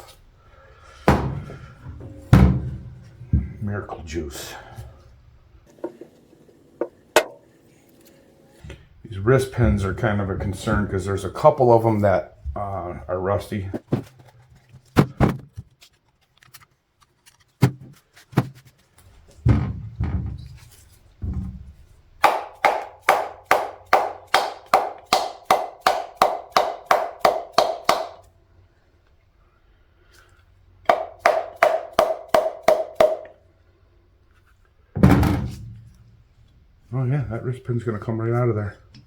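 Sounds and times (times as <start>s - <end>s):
thuds: 1.1s - 3.6s, 19.4s - 25.0s, 35.0s - 36.1s
hammer tapping on metal: 22.2s - 28.3s, 30.9s - 33.4s.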